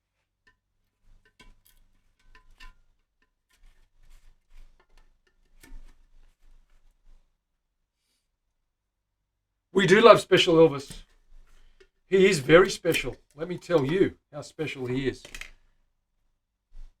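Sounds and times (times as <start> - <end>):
screwdriver prying at tin lid: 15.2 - 15.5.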